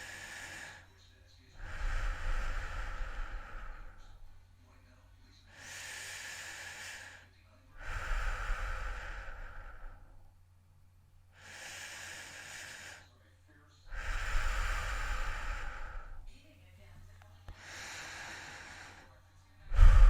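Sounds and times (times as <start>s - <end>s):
person breathing heavily: 0.0s - 4.3s, 5.5s - 10.2s, 11.3s - 13.2s, 13.9s - 16.3s, 17.5s - 20.0s.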